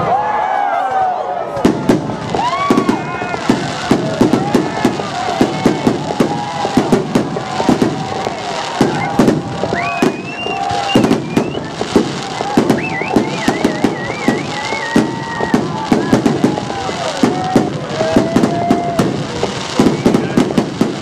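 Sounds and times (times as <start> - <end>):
fireworks bangs: 1.5 - 21.0
high whistling tone: 8.9 - 11.8, 12.6 - 15.5.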